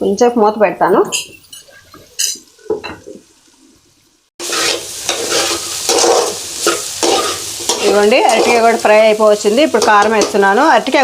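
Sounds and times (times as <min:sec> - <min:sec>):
food sizzling in hot oil: 0:01.1 - 0:11.0
spatula scraping a pan: 0:04.4 - 0:08.8.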